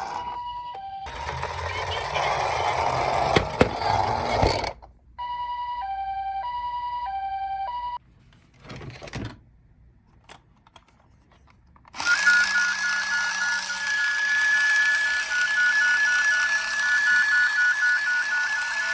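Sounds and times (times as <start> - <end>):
toy siren two-tone call: 0.0 - 2.3, 5.2 - 8.0, 12.0 - 18.9.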